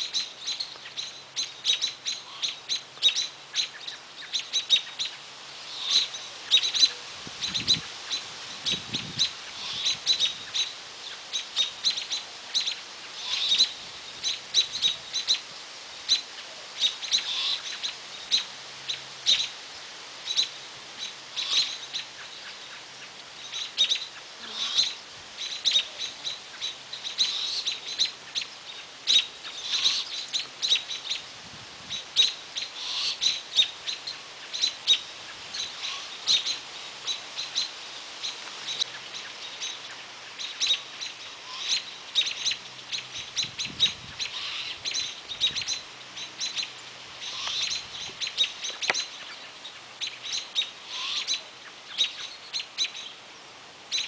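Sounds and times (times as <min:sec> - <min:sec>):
small bird chirping: 0:00.0 - 0:15.5, 0:20.2 - 0:53.2.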